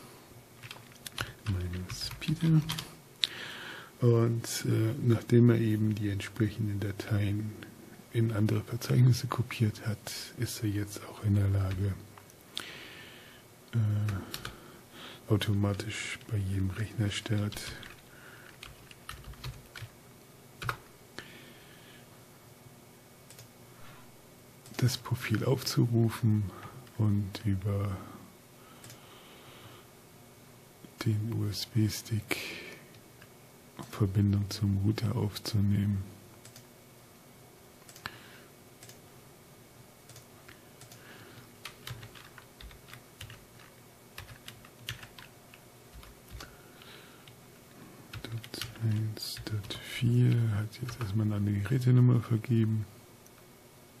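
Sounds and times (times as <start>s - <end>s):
typing on a keyboard: 0.6s - 2.9s, 17.4s - 19.9s, 20.6s - 20.8s, 41.6s - 45.3s, 45.9s - 46.5s.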